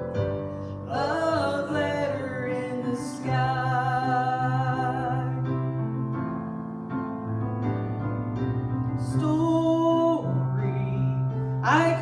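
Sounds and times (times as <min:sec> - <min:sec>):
piano chords: 0:00.0 - 0:12.0
person singing: 0:00.7 - 0:05.8, 0:09.0 - 0:12.0.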